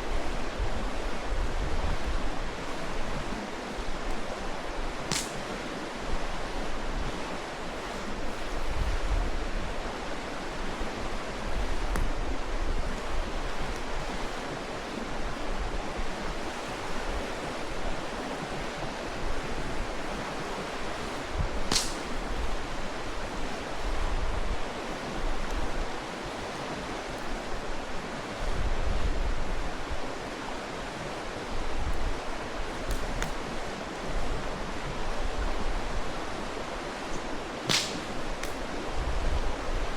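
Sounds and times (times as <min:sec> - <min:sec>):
stream rushing: 0:00.0 - 0:39.9
campfire wood popping: 0:05.1 - 0:05.6, 0:21.6 - 0:22.3, 0:32.8 - 0:33.5, 0:37.7 - 0:38.6.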